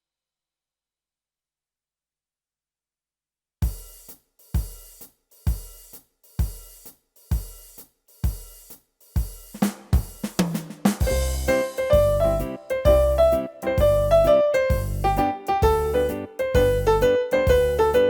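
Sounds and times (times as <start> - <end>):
drum fill: 3.6 - 18.0
kick drum: 3.6 - 18.0.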